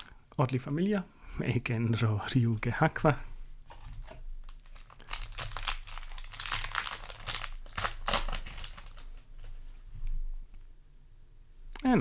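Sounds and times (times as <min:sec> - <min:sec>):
foil wrapper crinkling: 0:03.7 - 0:09.6.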